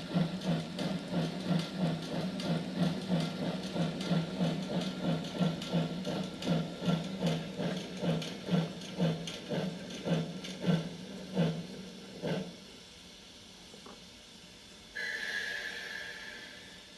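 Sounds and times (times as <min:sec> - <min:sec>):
steam locomotive chuffing: 0:00.0 - 0:12.7, 0:15.0 - 0:16.9
faint steam hiss: 0:12.6 - 0:16.9.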